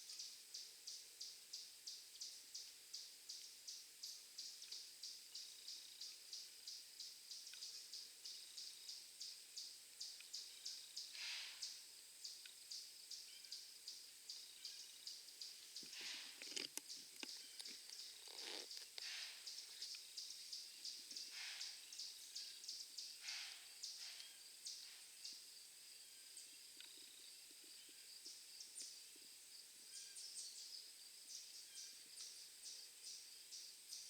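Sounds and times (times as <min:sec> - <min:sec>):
insect chirping: 0:00.0 - 0:34.0
short soft hiss: 0:11.1 - 0:11.7.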